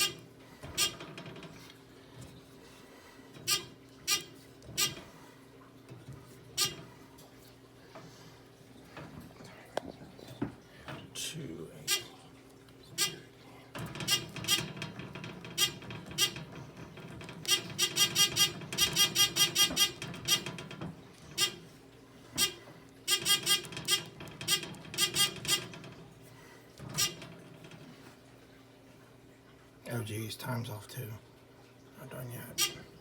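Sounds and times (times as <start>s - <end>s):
fire alarm horn pulses: 0.0s - 0.2s, 3.5s - 5.0s, 6.6s - 6.8s, 11.8s - 12.2s, 13.0s - 13.3s, 15.6s - 16.4s, 17.4s - 20.5s, 22.4s - 25.7s, 32.5s - 33.0s.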